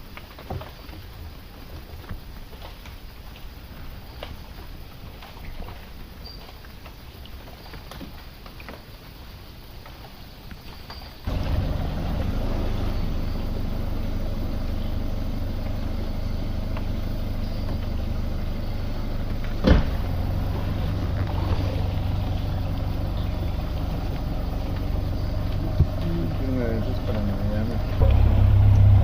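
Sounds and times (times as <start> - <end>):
outboard motor humming: 11.2 - 29.0.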